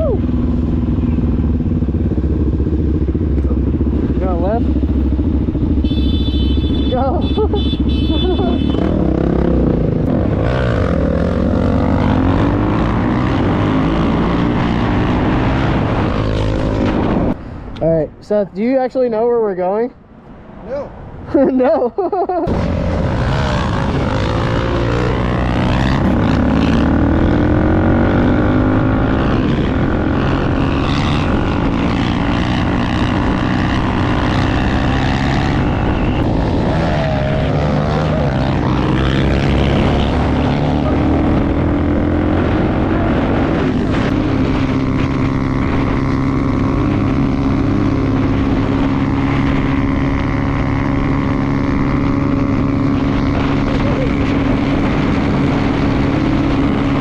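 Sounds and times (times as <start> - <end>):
motorcycle engine running: 0.0 - 14.2.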